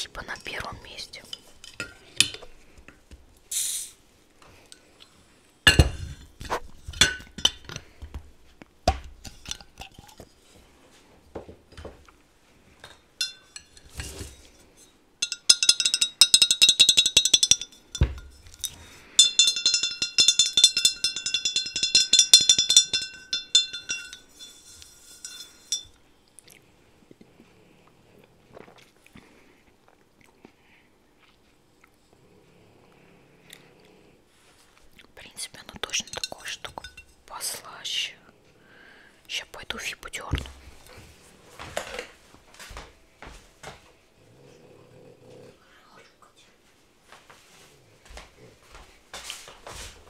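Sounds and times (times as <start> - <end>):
beer bottle opening hiss: 3.5 - 4.0
glass clinks and knocks: 5.7 - 6.2, 6.9 - 7.8, 12.8 - 14.3, 15.2 - 26.0, 36.0 - 37.2
ringing glass tone: 15.2 - 26.0.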